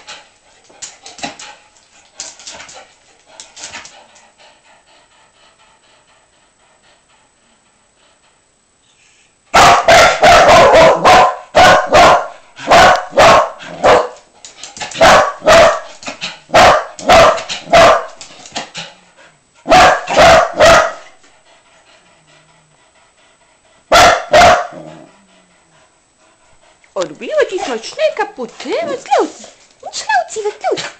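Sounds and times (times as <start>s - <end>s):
dog barking: 9.5s - 14.2s, 14.9s - 18.2s, 19.7s - 21.0s, 23.9s - 24.8s.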